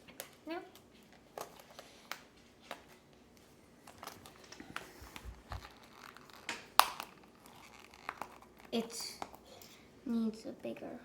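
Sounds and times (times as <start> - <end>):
plastic packet crinkling: 3.8 - 9.4.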